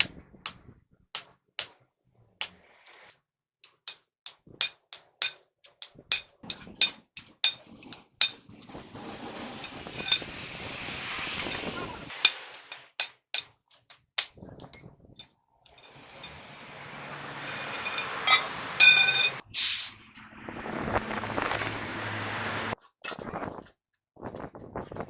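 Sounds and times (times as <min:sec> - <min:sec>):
hammer striking metal: 0:04.6 - 0:08.4, 0:09.7 - 0:10.3, 0:11.3 - 0:14.8, 0:15.7 - 0:19.4
steady rushing noise: 0:08.5 - 0:12.5, 0:15.8 - 0:22.8.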